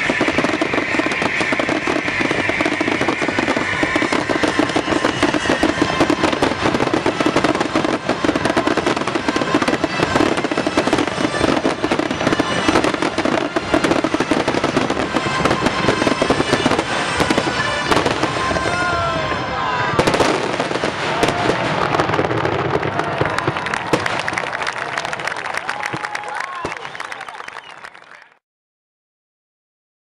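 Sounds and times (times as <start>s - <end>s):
show music playing: 0.0s - 22.8s
fireworks bursting and crackling: 0.0s - 27.7s.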